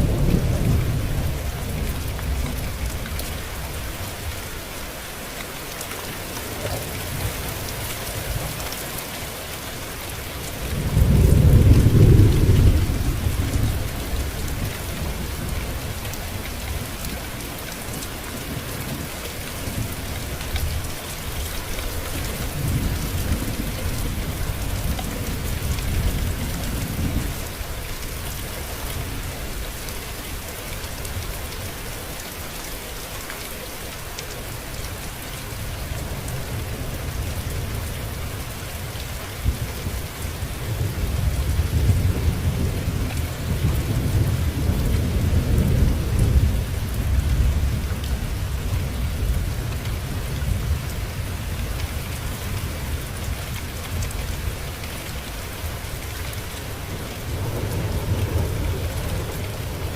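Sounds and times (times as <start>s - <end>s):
steady rain falling: 0.0s - 59.9s
thunder rolling: 10.8s - 15.9s.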